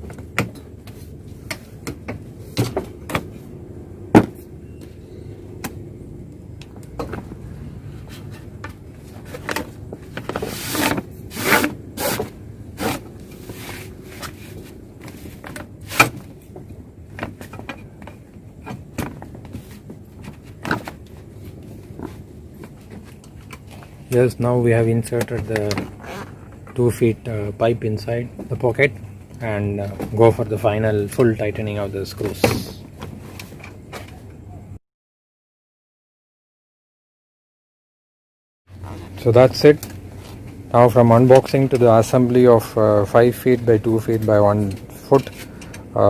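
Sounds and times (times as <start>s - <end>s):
pipe scraping against fabric: 10.3s - 16.1s, 38.7s - 39.3s.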